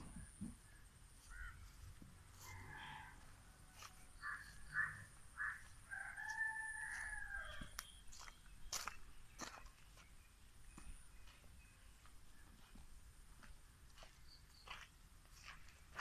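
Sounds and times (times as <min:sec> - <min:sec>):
rooster crowing: 0:02.3 - 0:07.8.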